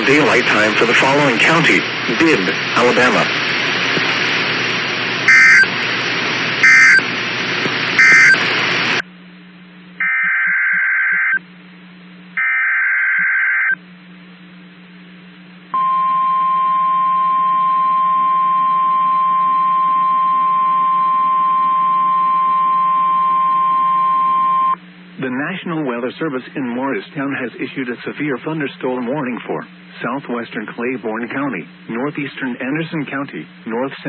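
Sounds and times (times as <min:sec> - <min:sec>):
radio static: 0:00.0 - 0:09.0, 0:10.0 - 0:11.4
shrill two-pitch data tones: 0:05.3 - 0:05.7, 0:06.6 - 0:07.0, 0:08.0 - 0:08.4, 0:10.0 - 0:11.4
steady warning alarm tone: 0:05.3 - 0:05.7, 0:06.6 - 0:07.1, 0:08.0 - 0:08.4, 0:10.0 - 0:11.4, 0:15.8 - 0:24.8.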